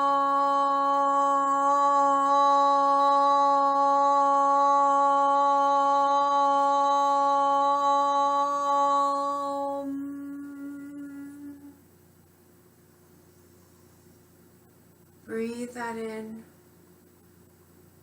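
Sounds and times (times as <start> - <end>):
woman chanting long note: 0.0 - 11.8.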